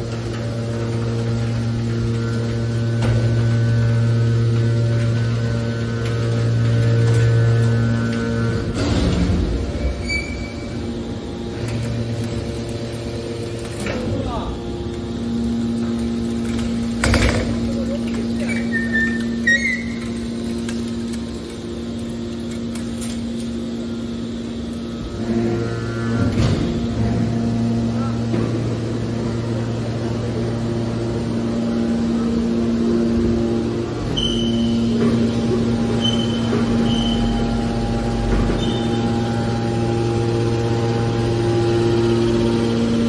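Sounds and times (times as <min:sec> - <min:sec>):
hydraulic baler humming: 0:00.0 - 0:43.0
high squeak: 0:18.4 - 0:20.2, 0:34.1 - 0:34.8, 0:36.0 - 0:37.4.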